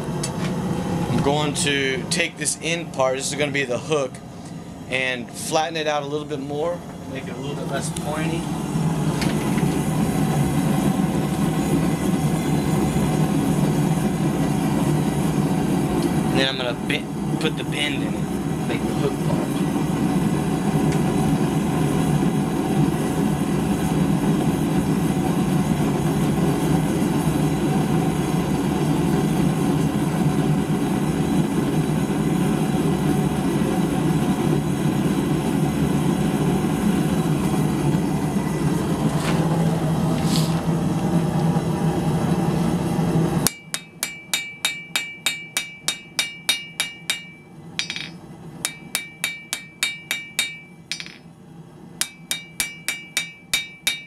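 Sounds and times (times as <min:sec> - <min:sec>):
hammer striking steel on anvil: 0:43.4 - 0:51.3, 0:52.0 - 0:54.0.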